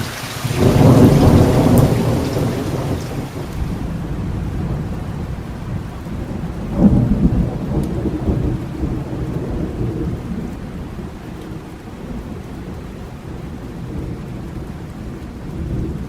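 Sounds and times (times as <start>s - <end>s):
loud thunder peal: 0.0s - 11.2s
steady rain: 0.0s - 16.0s
thunder rumbling: 0.0s - 16.0s.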